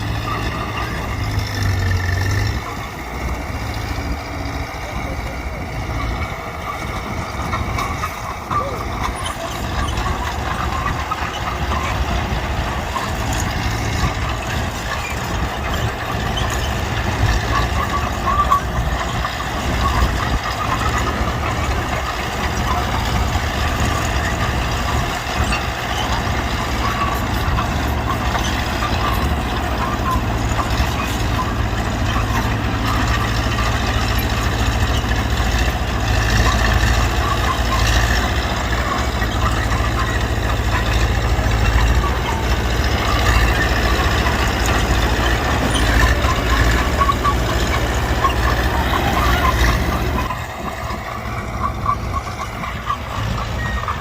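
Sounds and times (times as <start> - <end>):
bulldozer diesel engine droning: 0.0 - 54.0.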